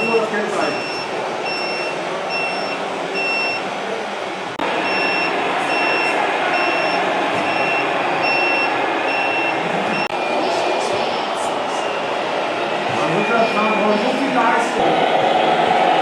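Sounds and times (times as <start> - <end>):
reversing beeper: 0.0 - 3.7, 4.8 - 10.8, 11.7 - 14.7
steady running hum: 0.0 - 16.0.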